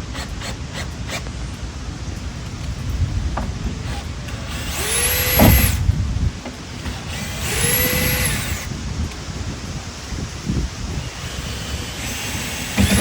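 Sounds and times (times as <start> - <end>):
power drill driving screws: 3.7 - 5.8, 6.8 - 8.8, 11.0 - 13.0.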